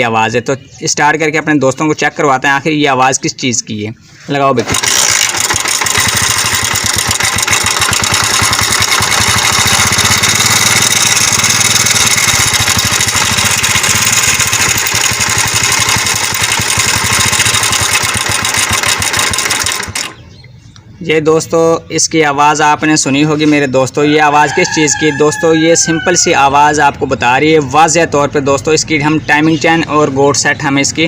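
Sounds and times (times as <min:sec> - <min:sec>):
motorcycle engine clattering: 0:04.6 - 0:20.4.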